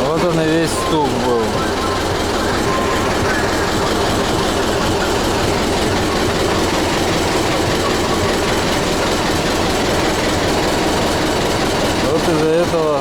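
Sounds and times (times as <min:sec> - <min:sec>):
tractor diesel engine idling: 0:00.0 - 0:13.0.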